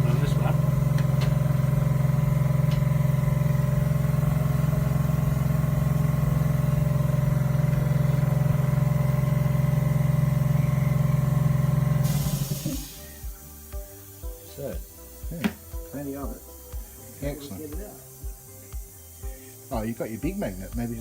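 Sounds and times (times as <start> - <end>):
machine motor humming: 0.0 - 21.0.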